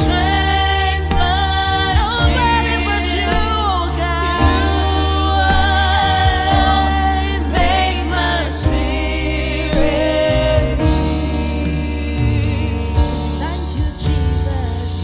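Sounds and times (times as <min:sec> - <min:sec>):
gospel singing with instruments: 0:00.0 - 0:15.0.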